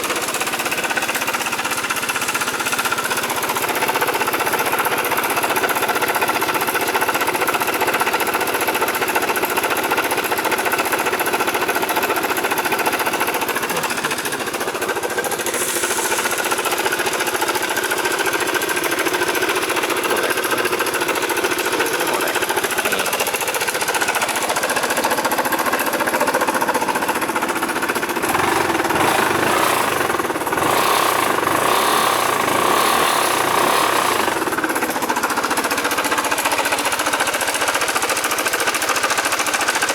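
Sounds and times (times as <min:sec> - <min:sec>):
scooter engine rattling: 0:00.0 - 0:39.9.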